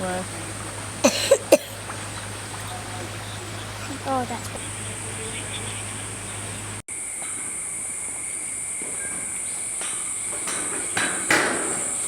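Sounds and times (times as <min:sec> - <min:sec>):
low steady hum: 0:00.0 - 0:06.8
insects buzzing: 0:00.0 - 0:12.0.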